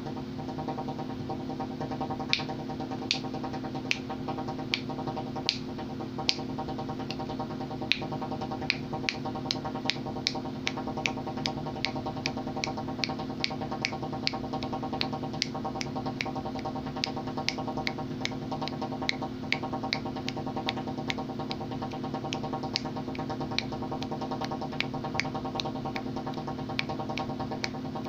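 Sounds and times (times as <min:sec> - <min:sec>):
water heater humming: 0:00.0 - 0:28.0
sharp high ticks: 0:00.3 - 0:28.0.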